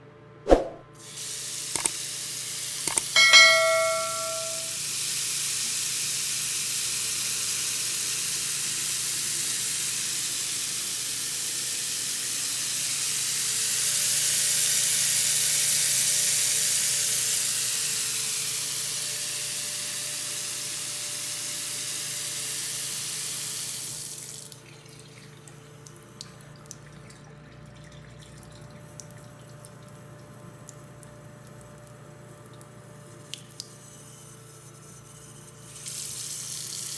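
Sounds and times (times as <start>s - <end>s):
tap water running into sink: 1.1s - 5.6s
faint water drips: 24.2s - 33.9s.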